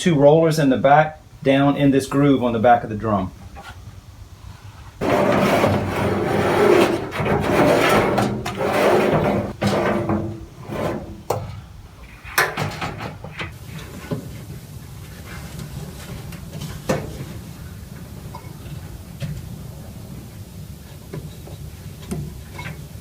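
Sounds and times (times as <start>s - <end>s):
dryer drum scraping: 2.0s - 13.6s
knocks and clunks: 4.8s - 13.5s.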